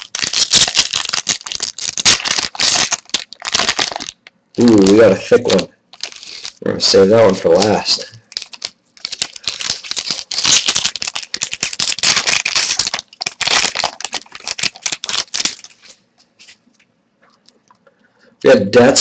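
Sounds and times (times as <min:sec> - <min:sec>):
trading cards being shuffled: 0:07.3 - 0:16.9.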